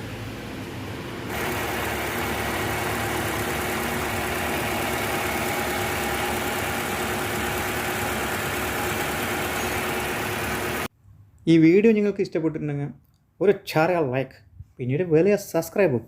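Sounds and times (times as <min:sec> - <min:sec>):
car engine idling: 0:01.3 - 0:10.9.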